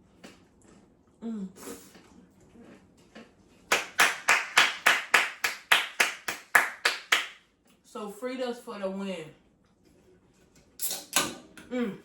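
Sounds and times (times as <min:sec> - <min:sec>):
hands clapping: 0:03.7 - 0:07.4.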